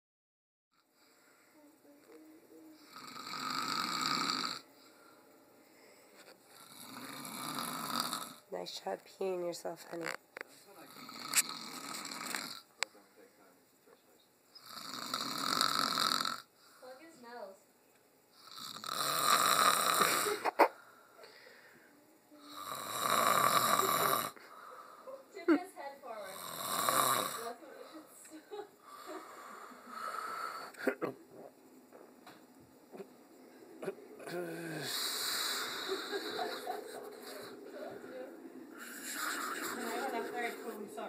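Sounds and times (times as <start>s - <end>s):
child snoring: 2.6s - 4.7s, 6.5s - 8.4s, 10.8s - 12.6s, 14.6s - 16.5s, 18.4s - 20.6s, 22.4s - 25.1s, 26.2s - 27.6s, 28.9s - 30.8s, 33.8s - 37.8s, 38.7s - 40.5s.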